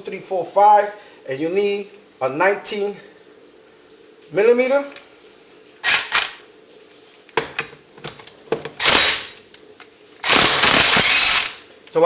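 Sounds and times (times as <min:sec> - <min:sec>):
impact gun loosening lug nuts: 0:05.8 - 0:06.4, 0:08.8 - 0:09.4, 0:10.2 - 0:11.6.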